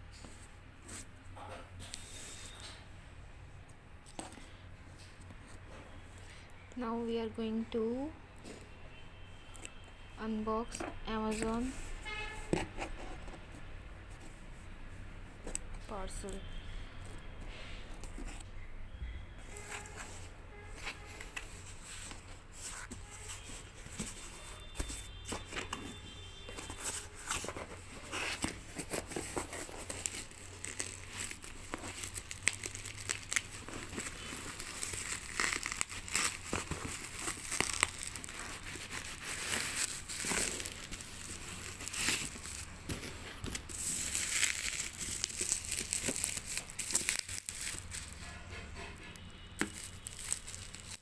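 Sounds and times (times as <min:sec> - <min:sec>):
packaging crinkling and tearing: 0:19.4 - 0:51.0.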